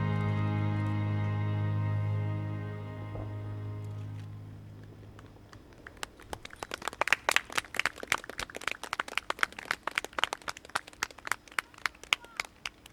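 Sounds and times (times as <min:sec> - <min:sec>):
people clapping: 0:00.0 - 0:02.1, 0:05.5 - 0:12.9.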